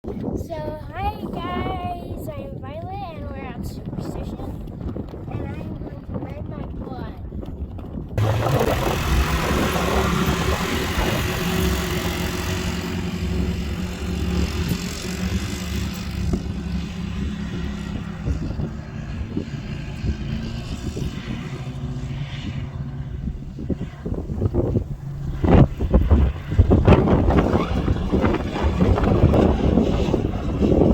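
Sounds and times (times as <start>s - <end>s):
quad engine running: 7.4s - 30.9s.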